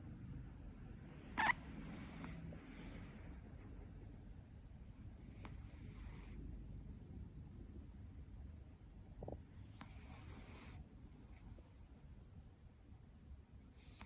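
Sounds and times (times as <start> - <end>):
cat snoring softly: 1.0 - 3.9, 4.8 - 8.3, 9.1 - 12.0, 13.6 - 14.0.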